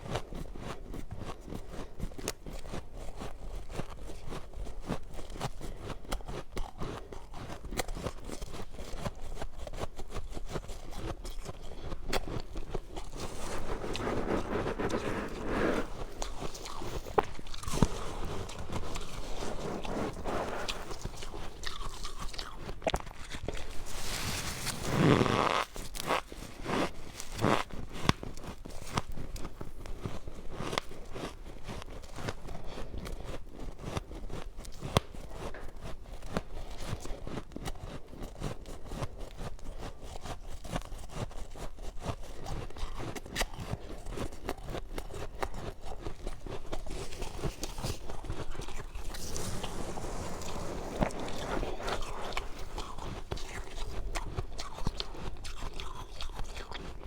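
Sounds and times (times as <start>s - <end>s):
chewing crunchy frost: 0.0s - 57.0s.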